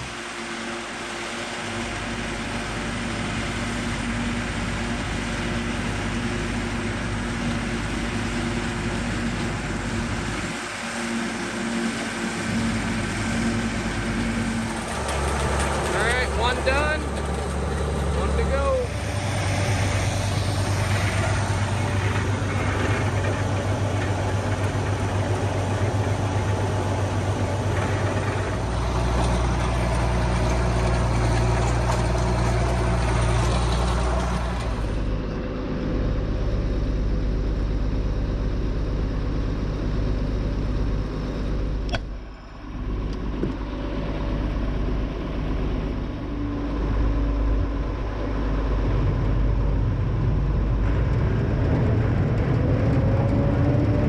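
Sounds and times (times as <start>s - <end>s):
tractor engine running: 0.0s - 54.0s.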